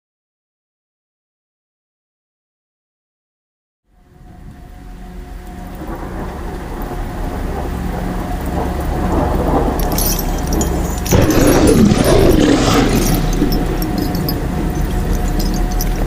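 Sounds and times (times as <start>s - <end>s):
crackling hiss: 3.9s - 16.0s
low noisy rumble: 3.9s - 16.0s.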